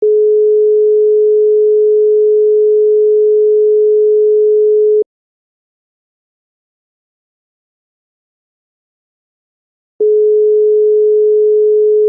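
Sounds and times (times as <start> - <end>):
telephone holding tone: 0.0 - 5.1, 10.0 - 12.0.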